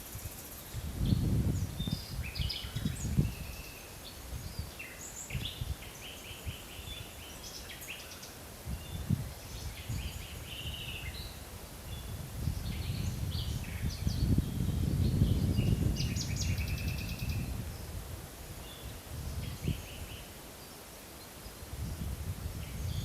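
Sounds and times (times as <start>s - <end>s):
birds singing and trilling: 0.0s - 18.0s, 18.6s - 23.0s
wind gusts rumbling: 0.8s - 3.4s, 11.9s - 18.2s.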